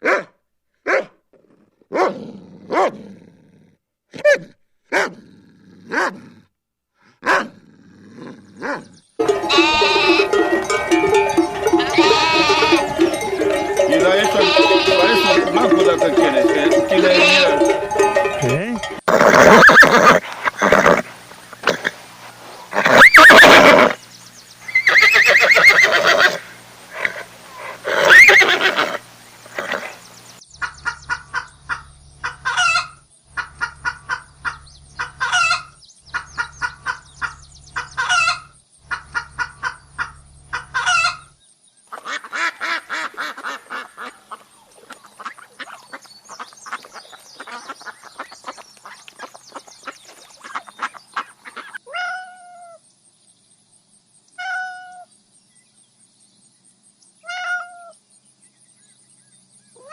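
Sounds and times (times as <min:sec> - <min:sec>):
farm animal calls: 0:08.6 - 0:24.0, 0:24.6 - 0:52.8
faint chattering: 0:09.2 - 0:22.0.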